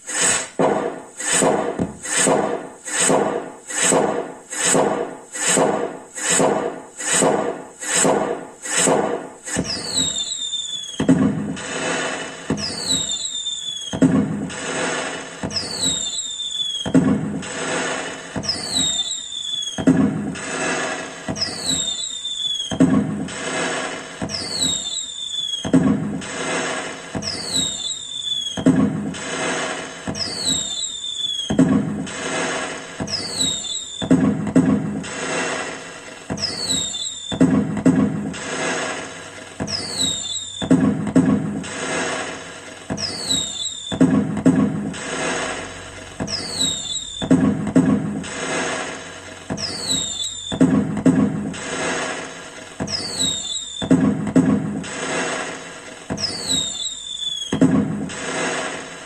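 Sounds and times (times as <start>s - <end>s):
firecracker bangs and crackle: 0.0s - 59.0s
high falling whistle: 9.5s - 34.4s, 36.4s - 37.7s, 39.6s - 41.0s, 43.0s - 44.2s, 46.2s - 47.6s, 48.2s - 50.8s, 52.8s - 54.1s, 56.1s - 58.7s.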